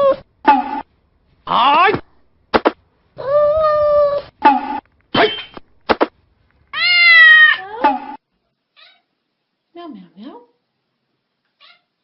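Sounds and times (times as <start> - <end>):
cat meowing: 6.7 - 7.7, 8.8 - 9.1, 11.5 - 12.0.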